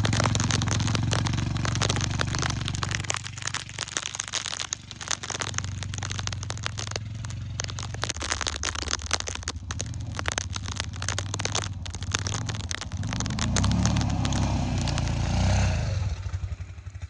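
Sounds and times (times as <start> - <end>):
vehicle engine running: 0.0 - 4.0
crackling and crunching: 0.0 - 16.7.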